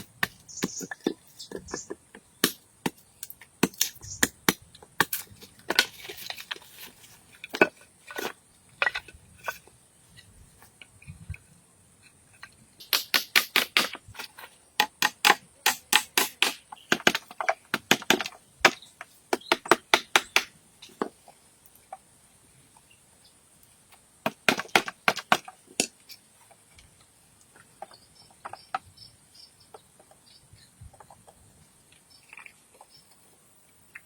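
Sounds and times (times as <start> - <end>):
hand tool chopping wood: 0.0 - 6.6, 12.8 - 21.1, 24.2 - 26.0.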